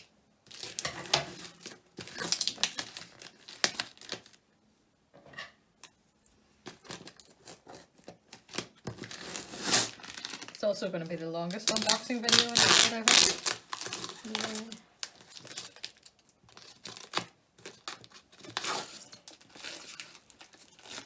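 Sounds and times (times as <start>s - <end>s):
packaging crinkling: 0.0s - 4.4s, 6.6s - 21.0s
packing tape tearing: 0.5s - 4.4s, 8.3s - 10.7s, 11.5s - 21.0s.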